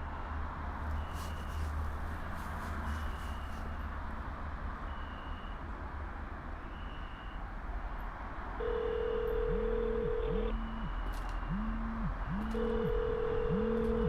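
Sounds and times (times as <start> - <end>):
faint high beeps: 8.6 - 14.0
low steady hum: 8.6 - 14.0
telephone ringback tone: 8.6 - 14.0.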